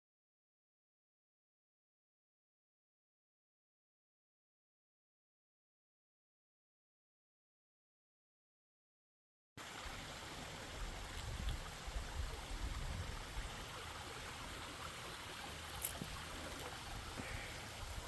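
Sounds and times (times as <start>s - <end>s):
distant waterfall hiss: 9.6s - 18.0s.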